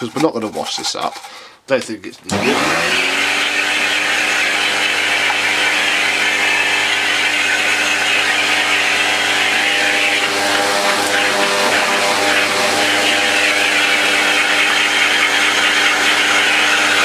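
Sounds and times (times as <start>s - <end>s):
electric motor humming: 2.3s - 17.0s.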